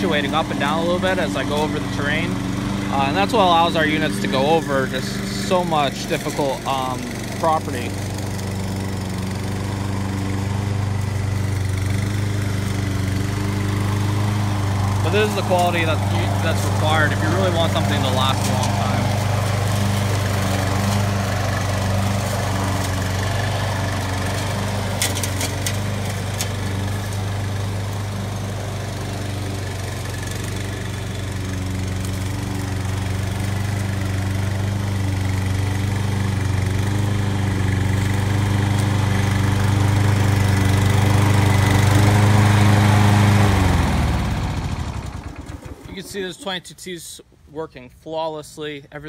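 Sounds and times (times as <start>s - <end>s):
mower engine running: 0.0s - 46.8s.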